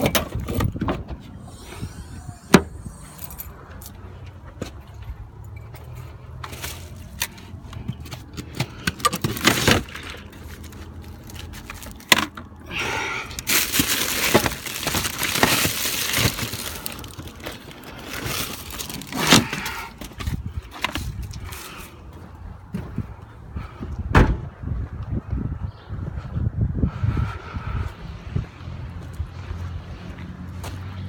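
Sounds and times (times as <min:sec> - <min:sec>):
crinkling rustling noise: 0:06.4 - 0:08.3, 0:09.1 - 0:12.4, 0:13.4 - 0:21.8.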